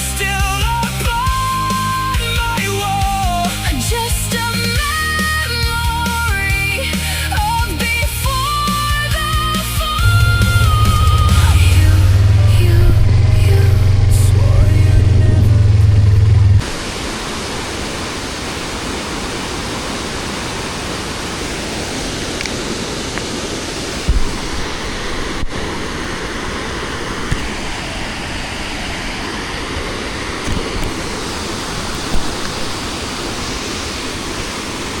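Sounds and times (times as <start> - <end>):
loud low hum: 10.0 - 16.6
waterfall rushing: 10.0 - 35.0.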